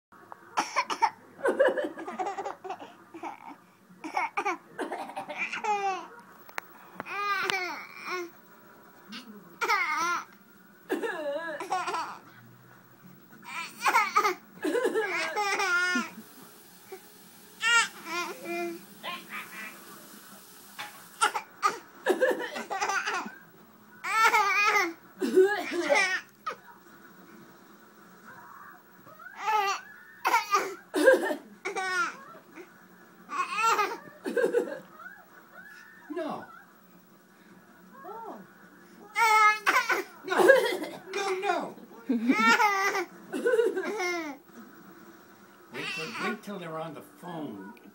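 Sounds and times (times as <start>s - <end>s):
child laughing: 42.1s - 44.4s.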